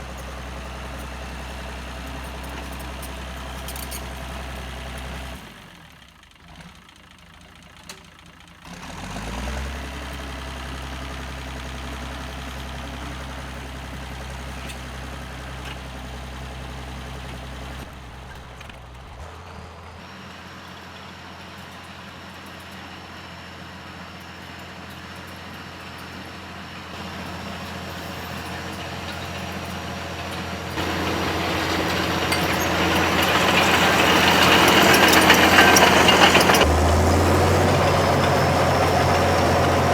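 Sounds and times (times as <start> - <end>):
bulldozer diesel engine: 0.0 - 39.9.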